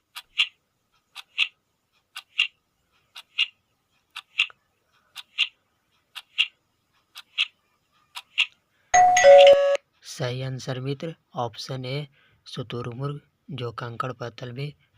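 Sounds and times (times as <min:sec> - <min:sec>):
clock ticking: 0:00.0 - 0:09.7.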